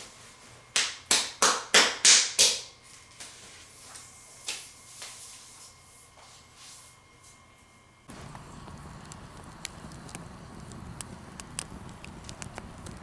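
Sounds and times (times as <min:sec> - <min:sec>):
quick sharp slaps: 0:00.8 - 0:02.6
faint taps: 0:08.1 - 0:13.0.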